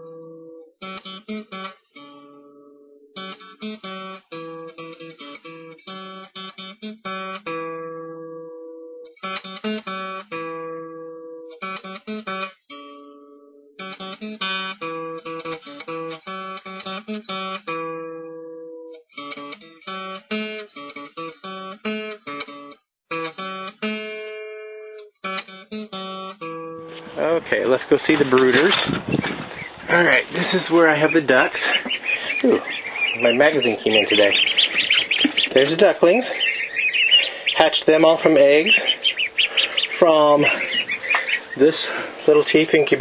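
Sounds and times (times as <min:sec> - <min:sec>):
acoustic guitar plucked and strummed: 0:00.0 - 0:29.7.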